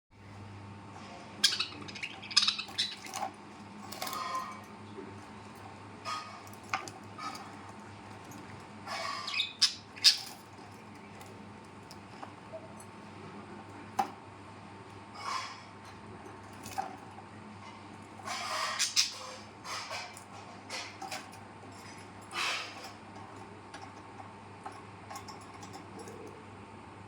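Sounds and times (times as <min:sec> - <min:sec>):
birds squawking and chirping: 0:01.0 - 0:12.7, 0:15.0 - 0:17.0, 0:17.6 - 0:24.2.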